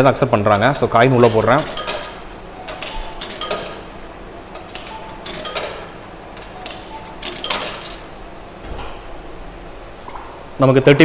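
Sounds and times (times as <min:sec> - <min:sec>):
coins clinking into a slot: 0:00.4 - 0:08.9.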